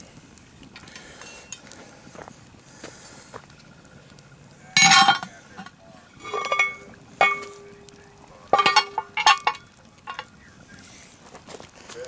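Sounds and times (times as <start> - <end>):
hard objects clinking together: 4.7 - 7.8, 8.4 - 10.3.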